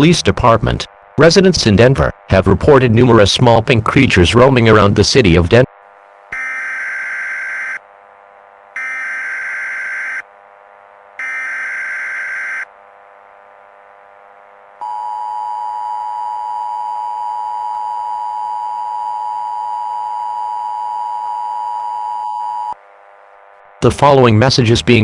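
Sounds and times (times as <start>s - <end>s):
steady warning alarm tone: 6.3s - 7.8s, 8.8s - 10.3s, 11.2s - 12.7s
raspy two-tone digital squawks: 6.4s - 7.8s, 8.8s - 10.2s, 11.2s - 12.6s.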